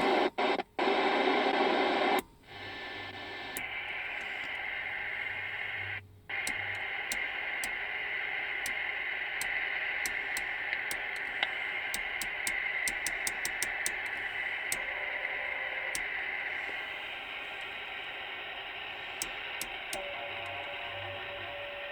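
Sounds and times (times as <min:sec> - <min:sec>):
radio static hiss: 0:00.0 - 0:21.9
faint sharp ticks: 0:06.3 - 0:08.0, 0:08.6 - 0:14.9.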